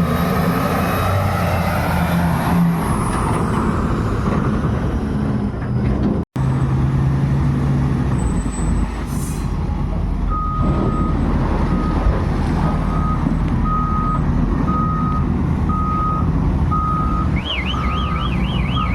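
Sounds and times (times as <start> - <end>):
diesel engine droning: 0.0 - 18.9
reversing alarm beeping: 12.9 - 18.9
warbling alarm: 17.4 - 18.9.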